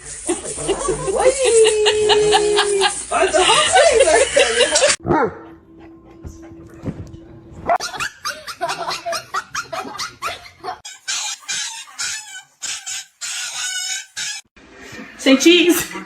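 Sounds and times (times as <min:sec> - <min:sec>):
dog barking and yipping: 0:07.7 - 0:14.5.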